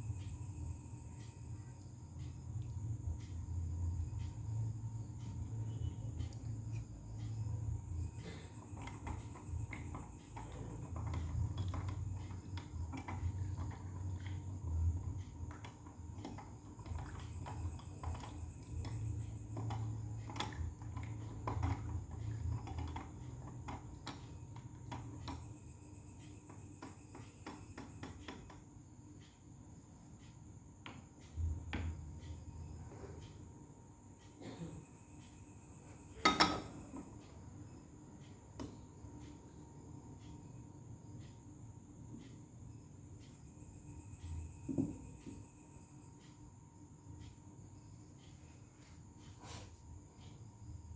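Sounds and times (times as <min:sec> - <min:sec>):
faint steady hum: 0:00.0 - 0:50.9
kitchenware clicks and knocks: 0:36.2 - 0:36.8.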